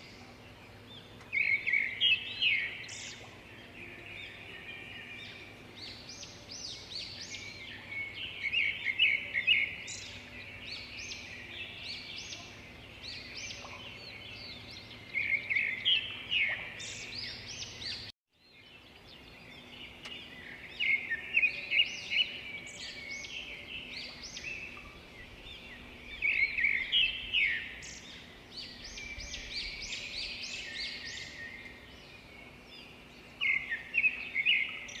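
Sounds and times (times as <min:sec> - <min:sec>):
birds chirping and singing: 0:00.0 - 0:35.0
faint steady background noise: 0:00.0 - 0:35.0.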